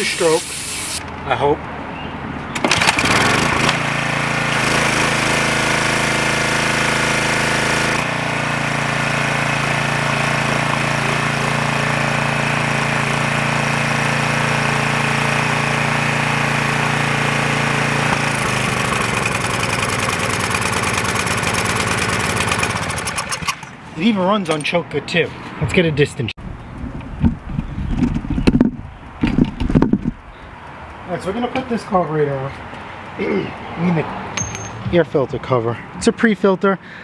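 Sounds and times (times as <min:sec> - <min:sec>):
pressure washer engine running: 0:00.0 - 0:01.0, 0:02.6 - 0:23.8.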